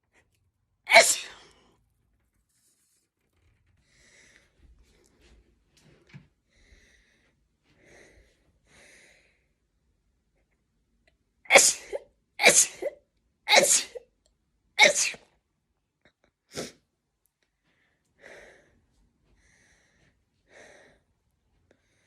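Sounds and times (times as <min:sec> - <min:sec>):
woman sneezing: 0:00.9 - 0:01.5, 0:11.5 - 0:14.0, 0:14.8 - 0:15.2.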